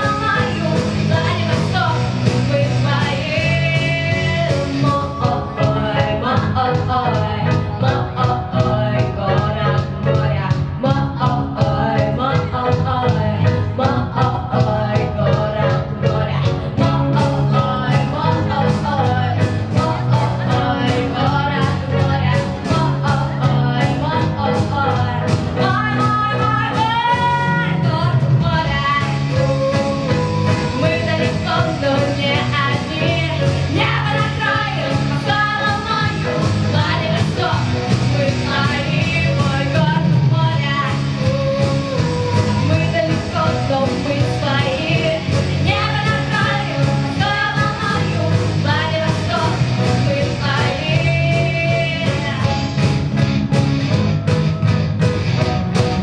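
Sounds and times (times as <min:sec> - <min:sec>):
person singing: 0:00.0 - 0:52.7
guitar: 0:00.0 - 0:56.0
steady drum beat: 0:40.9 - 0:56.0.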